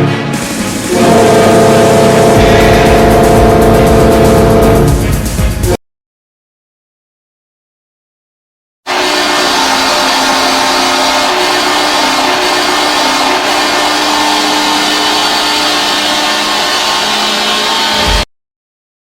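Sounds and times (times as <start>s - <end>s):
dense loud noise: 0.0s - 5.8s, 8.9s - 18.3s
arena goal horn: 0.9s - 4.9s, 8.9s - 18.3s.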